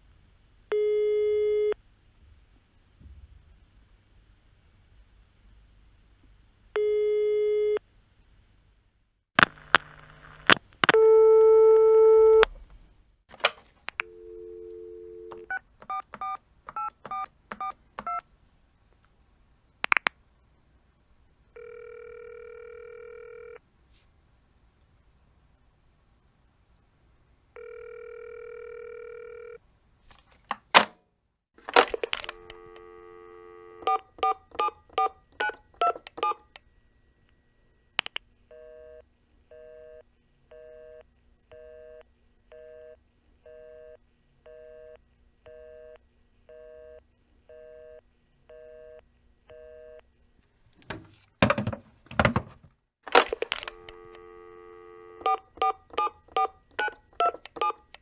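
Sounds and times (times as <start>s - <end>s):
telephone dial tone: 9.5s - 12.6s, 14.0s - 18.2s, 21.6s - 23.6s, 27.6s - 29.6s, 31.7s - 36.4s, 50.8s - 58.0s
handset clunks: 13.3s - 13.6s, 30.5s - 31.0s, 31.7s - 32.4s, 50.8s - 53.8s
even telephone beeps: 14.1s - 18.2s, 31.8s - 36.5s, 53.1s - 57.8s
touch-tone dialling: 14.1s - 18.2s, 31.8s - 36.4s, 50.9s - 57.9s.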